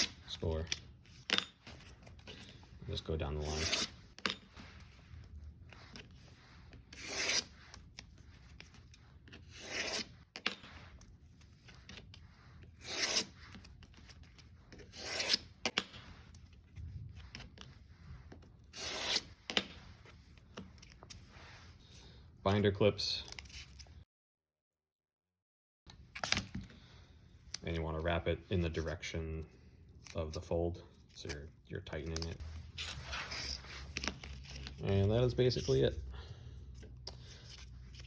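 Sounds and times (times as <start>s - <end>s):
scribe scratching sandpaper: 5.8s - 7.7s, 9.5s - 10.1s, 12.4s - 13.5s, 14.9s - 15.5s.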